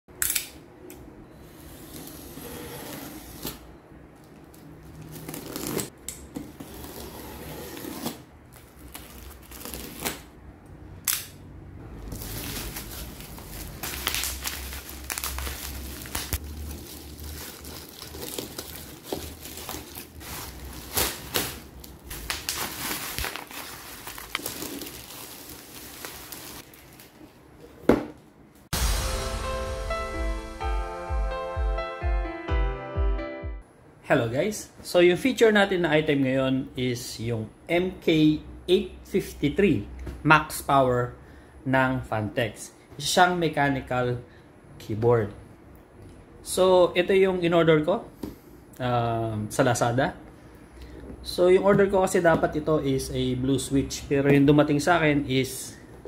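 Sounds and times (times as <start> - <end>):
packaging rustling and crinkling: 8.5 - 10.2, 12.1 - 27.4.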